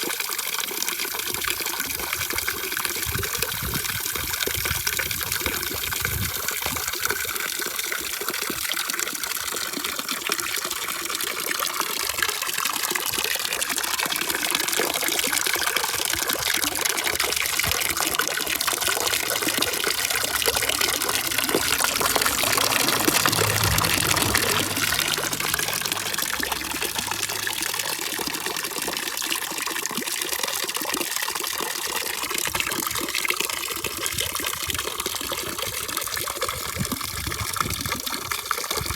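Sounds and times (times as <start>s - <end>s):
running water rushing: 12.6s - 32.6s.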